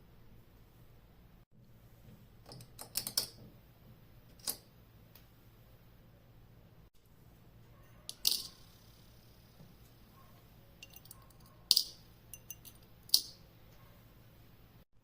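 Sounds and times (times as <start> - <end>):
hard objects clicking and clacking: 8.1 - 8.7, 10.8 - 13.4.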